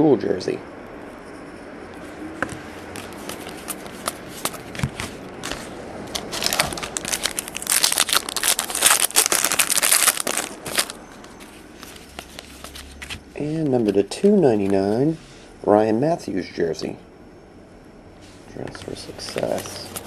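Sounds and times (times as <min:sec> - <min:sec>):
plastic wrappers crinkling and tearing: 0:03.0 - 0:13.2.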